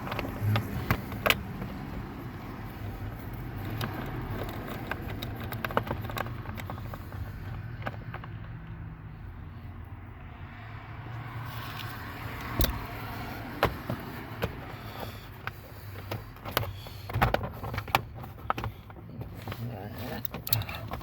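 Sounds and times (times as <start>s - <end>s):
socket wrench clicking on bolts: 11.8s - 12.9s.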